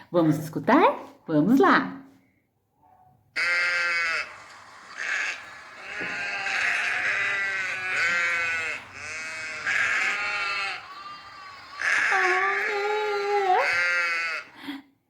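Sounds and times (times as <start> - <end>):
sheep bleating: 3.4 - 14.5.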